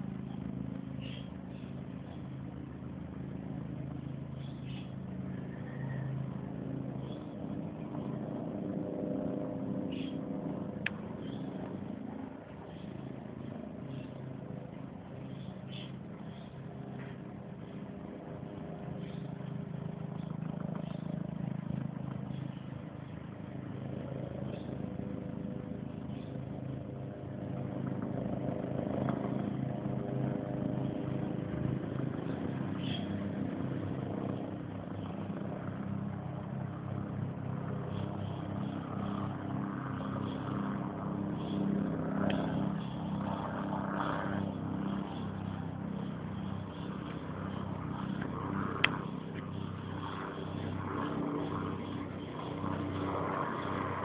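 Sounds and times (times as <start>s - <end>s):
vehicle engine hum: 0.0s - 54.0s.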